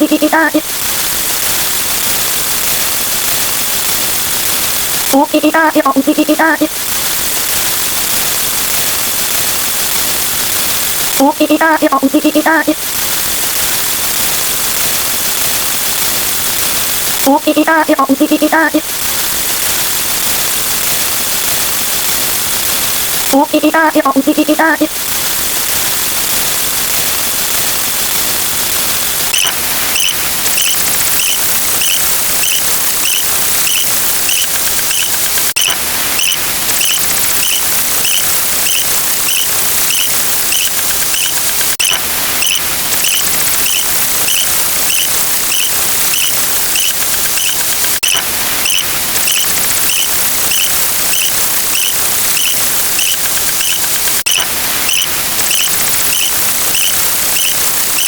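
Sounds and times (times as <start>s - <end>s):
steady hiss of noise: 0.0s - 58.0s
high squeaky blips: 29.3s - 58.0s
sharp click: 29.3s - 58.0s.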